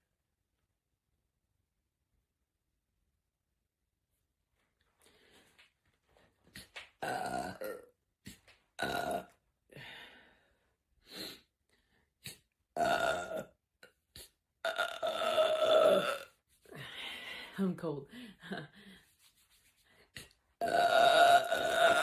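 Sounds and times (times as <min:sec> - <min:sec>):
woman belching: 0:07.0 - 0:07.9, 0:08.8 - 0:09.3, 0:12.8 - 0:13.6, 0:14.6 - 0:16.3, 0:20.6 - 0:22.0.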